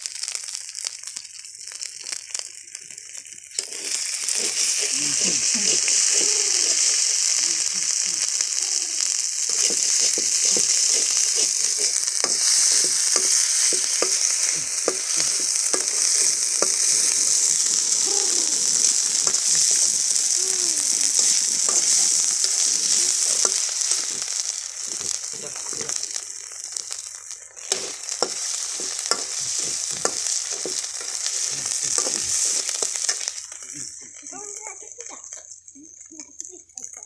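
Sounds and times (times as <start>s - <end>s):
fish sizzling in a pan: 0.0s - 37.0s
spatula scraping and knocking pan: 9.5s - 16.8s, 27.6s - 33.3s.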